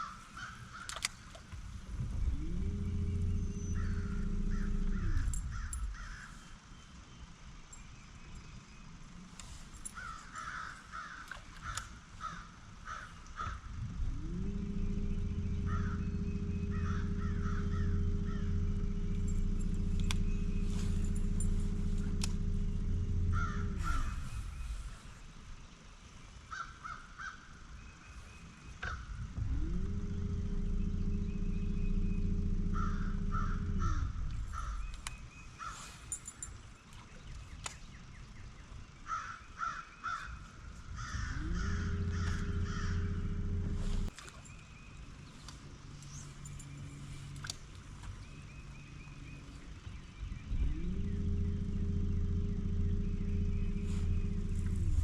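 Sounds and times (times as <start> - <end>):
crows cawing: 0.0 - 1.0, 3.8 - 6.5, 10.0 - 13.7, 15.7 - 16.0, 16.7 - 18.5, 23.3 - 24.2, 26.5 - 27.5, 32.8 - 34.9, 35.6 - 35.9, 39.1 - 43.6
electric motor humming: 1.4 - 6.4, 13.4 - 25.4, 29.2 - 35.7, 41.0 - 44.1, 49.0 - 55.0.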